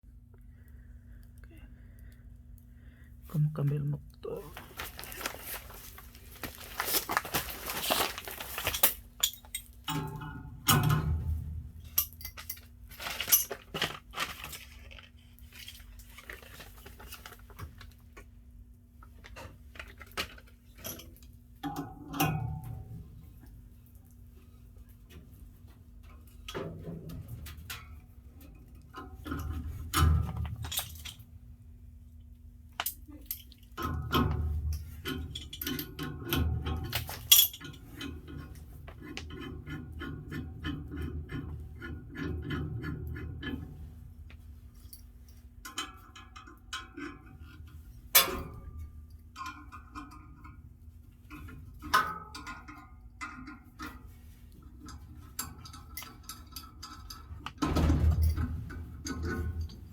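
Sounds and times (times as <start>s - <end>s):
steady low hum: 0.0s - 19.9s
metal tools clinking: 4.6s - 11.2s, 11.8s - 14.8s, 35.0s - 38.2s
low rumbling handling noise: 57.1s - 59.9s.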